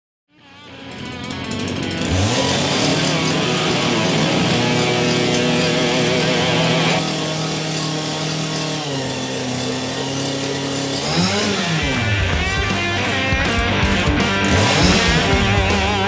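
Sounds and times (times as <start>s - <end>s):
chainsaw engine running: 0.3s - 16.0s
background music: 11.2s - 16.0s.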